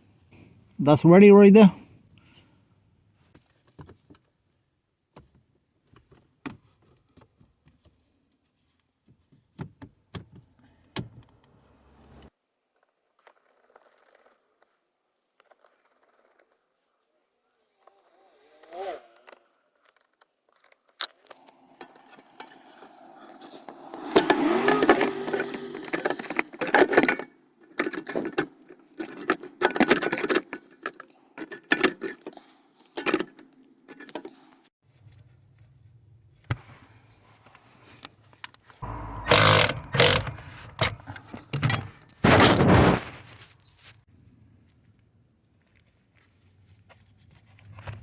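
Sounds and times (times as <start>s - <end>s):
plastic parts scraping and rustling: 19.7s - 35.3s, 37.4s - 44.0s
sharp plastic clicks and knocks: 38.9s - 42.9s.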